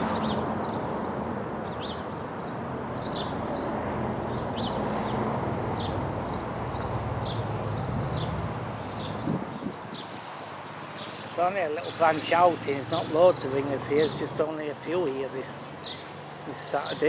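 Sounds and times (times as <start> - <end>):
small birds chirping: 5.8 - 17.0.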